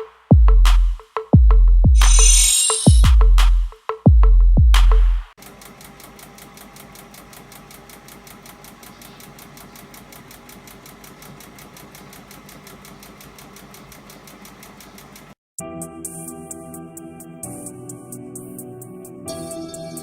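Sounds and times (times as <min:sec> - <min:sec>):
washing machine clicking: 0:05.4 - 0:15.4.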